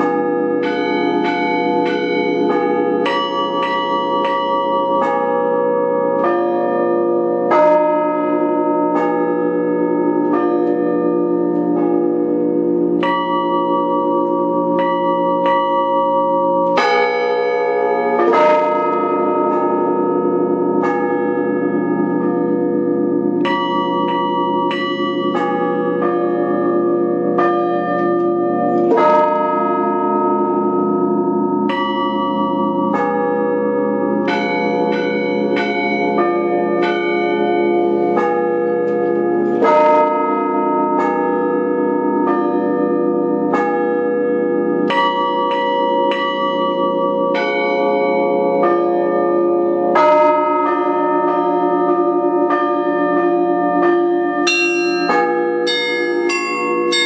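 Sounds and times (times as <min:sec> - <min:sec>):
hum of large bells: 0:00.0 - 0:57.0
small church bells struck quickly: 0:00.0 - 0:57.0
heavy stroke of biggest bell: 0:54.5 - 0:57.0.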